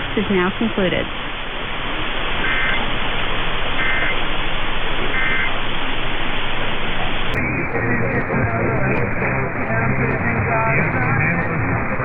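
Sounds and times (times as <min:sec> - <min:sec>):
radio reception hiss: 0:00.0 - 0:12.0
two-tone warbling data bursts: 0:01.8 - 0:05.7.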